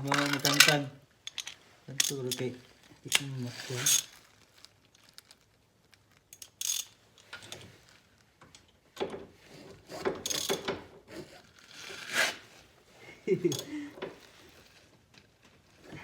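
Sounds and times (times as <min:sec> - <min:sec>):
metallic clicking of hand tools: 0:06.3 - 0:07.6, 0:10.2 - 0:10.8.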